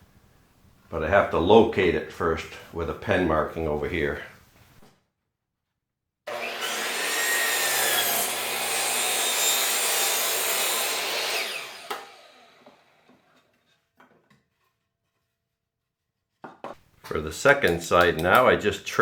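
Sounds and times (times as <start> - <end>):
miter saw cutting wood: 6.3 - 13.3.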